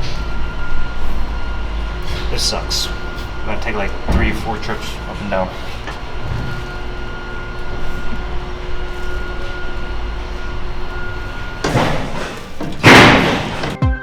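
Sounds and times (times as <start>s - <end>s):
faint whine: 0.0s - 13.8s
freight elevator humming: 0.0s - 13.8s
loud scraping crashes: 0.0s - 13.8s.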